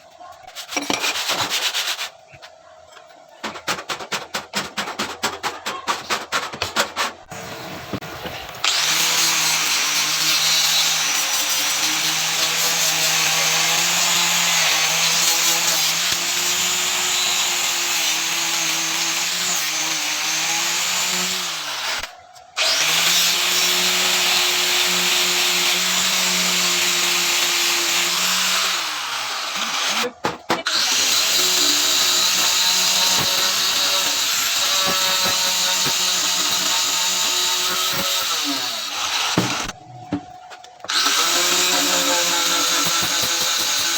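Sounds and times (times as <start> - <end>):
electric power tool running: 7.4 - 30.1, 40.8 - 43.9.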